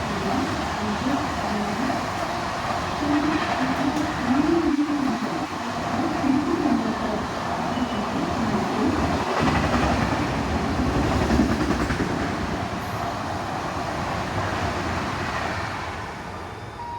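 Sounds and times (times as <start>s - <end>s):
train wheels rumbling on rail: 0.0s - 16.9s.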